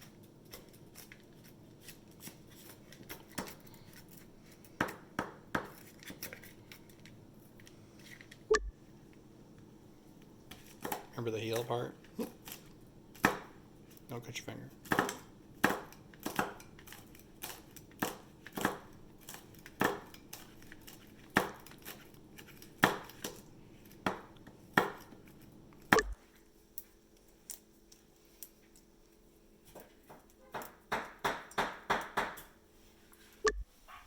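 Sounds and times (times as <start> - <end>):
knife chopping onion on board: 1.8 - 3.7, 4.8 - 6.3, 10.5 - 13.6, 14.7 - 25.1, 30.1 - 32.6.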